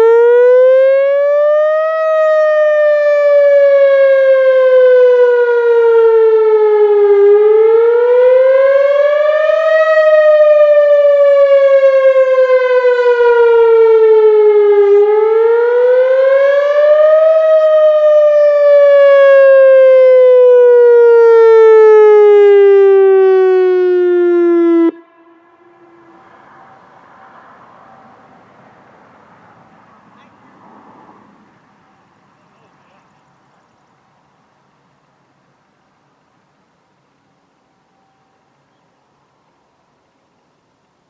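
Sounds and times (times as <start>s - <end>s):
tornado siren wailing: 0.0s - 30.1s.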